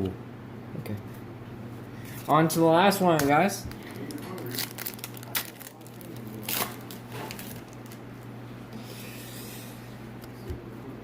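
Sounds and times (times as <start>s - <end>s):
low steady hum: 0.0s - 11.0s
sharp wrapper crinkles: 3.7s - 8.0s
card pack wrapper tearing: 4.0s - 8.0s.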